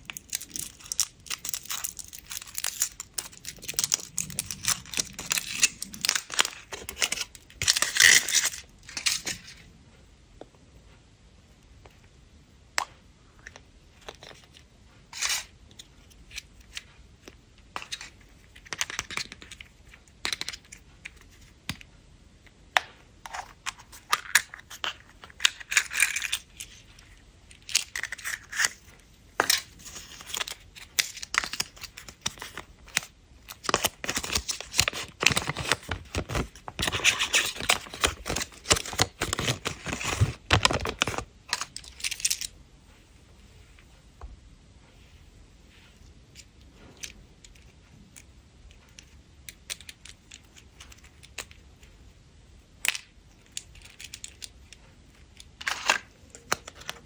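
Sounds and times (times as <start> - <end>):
wrappers crinkling and tearing: 0.0 - 9.3, 29.4 - 42.4.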